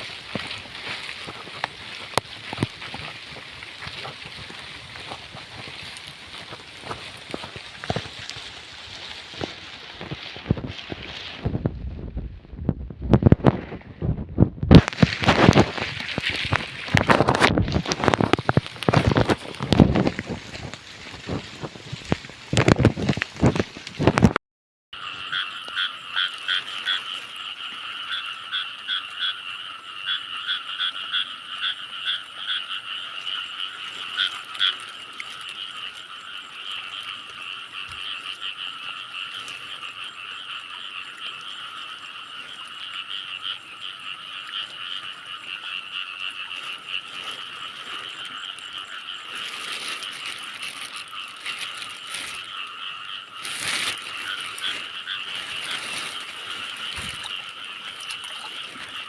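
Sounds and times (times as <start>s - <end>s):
frogs calling in chorus: 0.0s - 11.3s, 14.7s - 24.3s, 25.0s - 59.0s
rustling: 0.0s - 24.3s, 46.6s - 52.7s, 53.4s - 59.0s.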